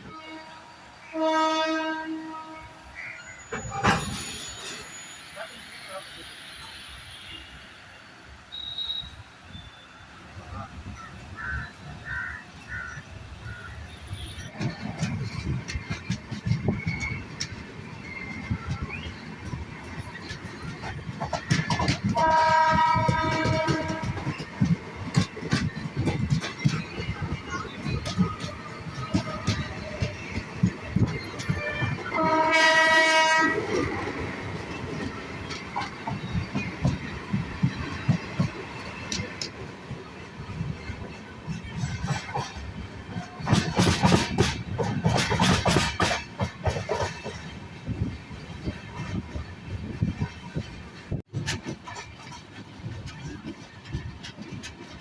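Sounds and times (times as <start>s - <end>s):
train horn blast: 0.0s - 3.7s, 22.1s - 24.4s, 31.5s - 33.8s
train coaches rumbling: 0.0s - 55.0s
bird cawing: 11.0s - 13.8s
knocks and clatter: 14.4s - 32.1s, 41.5s - 55.0s.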